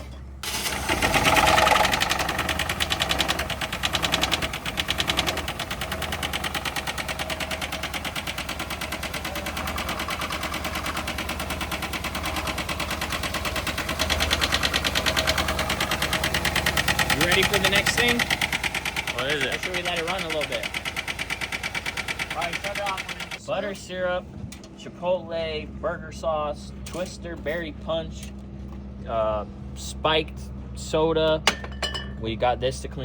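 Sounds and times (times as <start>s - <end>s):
engine rod knocking: 0.8s - 23.4s.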